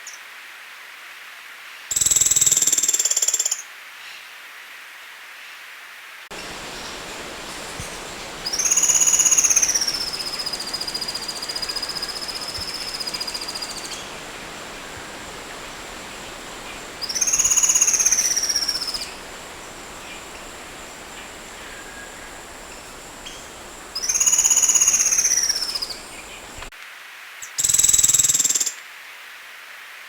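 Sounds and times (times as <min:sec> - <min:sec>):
steady hiss: 0:06.3 - 0:27.1
bird singing buzzy trilled notes: 0:06.4 - 0:26.7.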